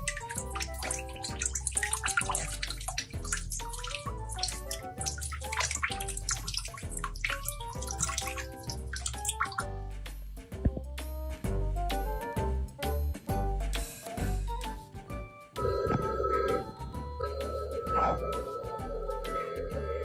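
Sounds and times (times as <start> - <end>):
splashy high rattle: 0.0 - 9.7
background music with bass line: 0.0 - 20.0.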